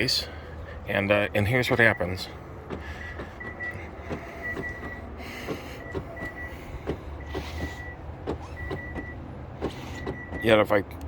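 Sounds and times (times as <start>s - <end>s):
car door lock actuators clicking: 2.6s - 10.6s.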